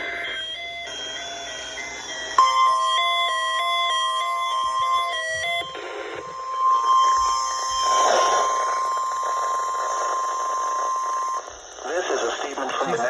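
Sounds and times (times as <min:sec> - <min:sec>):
stepped electronic beeping melody: 0:00.0 - 0:11.9
steady loud alarm tone: 0:00.0 - 0:13.0
radio static: 0:04.5 - 0:13.0.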